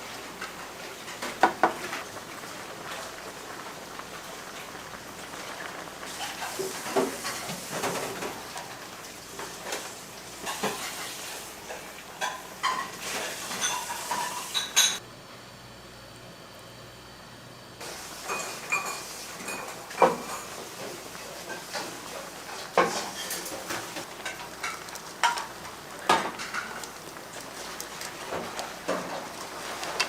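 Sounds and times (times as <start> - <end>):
dishes and utensils clinking: 12.2 - 15.0, 18.2 - 25.5
steady hiss: 17.8 - 23.0.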